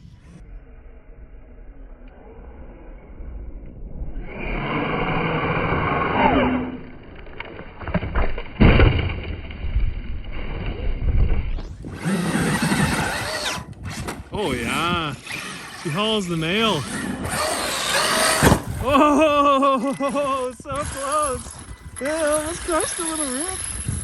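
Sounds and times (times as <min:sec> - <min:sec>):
electric toy truck motor whining: 0:04.2 - 0:07.4, 0:11.6 - 0:24.0
heavy thumps: 0:16.9 - 0:18.9.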